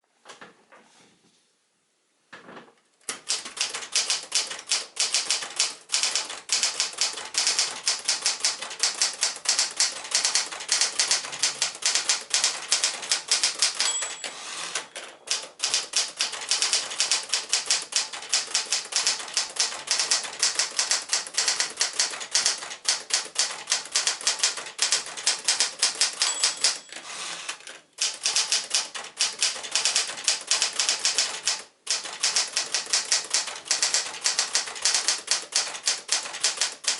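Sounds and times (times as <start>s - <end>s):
typewriter keys clacking: 3.1s - 36.9s
typewriter bell ringing: 6.0s - 27.4s.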